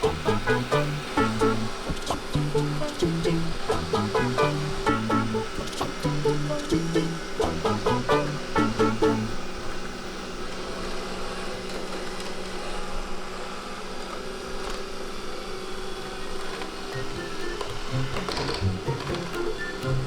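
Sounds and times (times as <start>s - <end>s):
plucked music notes: 0.0s - 9.4s, 17.0s - 20.0s
robot vacuum motor hum: 0.0s - 20.0s.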